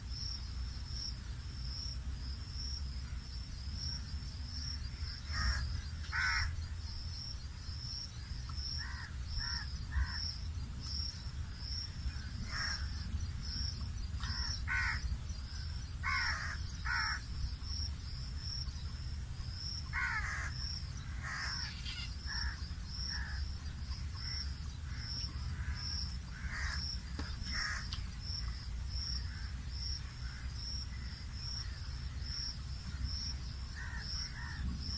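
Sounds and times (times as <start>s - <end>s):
crows cawing: 5.2s - 6.5s, 8.8s - 10.3s, 12.1s - 13.0s, 14.2s - 15.1s, 16.0s - 17.3s, 19.9s - 23.4s, 24.2s - 27.9s, 29.2s - 29.6s, 33.8s - 34.6s.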